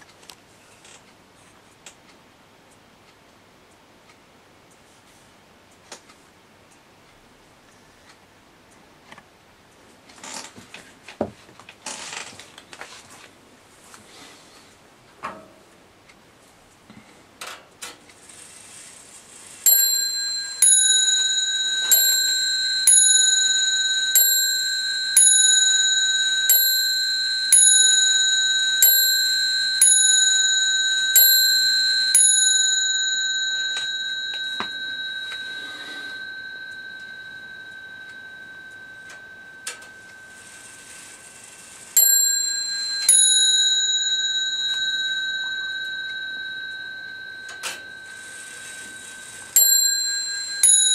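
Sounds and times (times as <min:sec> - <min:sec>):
clock movement clicks: 0:17.4 - 0:50.9
mantel clock striking: 0:19.7 - 0:50.9.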